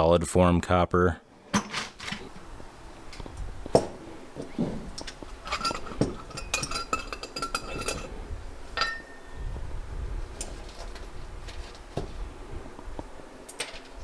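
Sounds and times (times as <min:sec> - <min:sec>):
scrap metal clinking: 0:01.4 - 0:09.5, 0:13.5 - 0:14.0.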